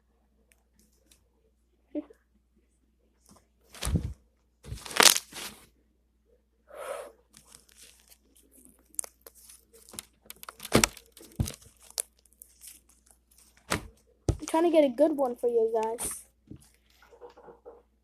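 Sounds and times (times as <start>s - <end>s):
slime stretched and pressed: 4.7s - 5.6s, 8.8s - 13.9s.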